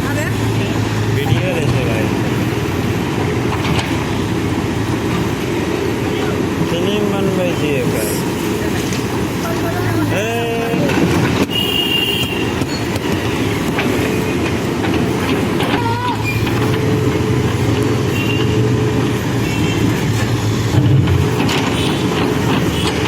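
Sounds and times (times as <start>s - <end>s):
diesel engine running: 0.0s - 23.0s
short squeal: 16.1s - 16.5s.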